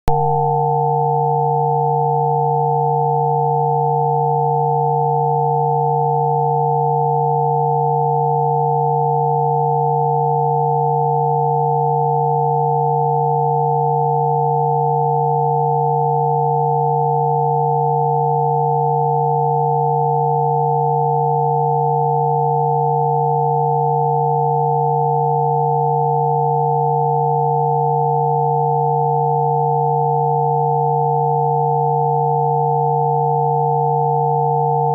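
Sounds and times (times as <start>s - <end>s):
steady electronic sine tones: 0.0s - 34.9s.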